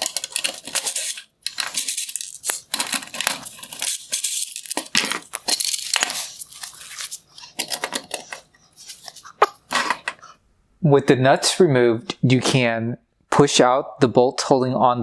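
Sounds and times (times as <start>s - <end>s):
metal nuts clicking and rattling: 0.0s - 10.3s.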